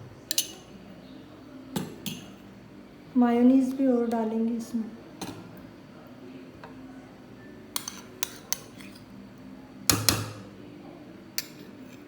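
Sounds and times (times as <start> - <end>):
spoon clinking against a bowl: 0.3 - 0.7, 7.7 - 9.0, 11.4 - 12.0.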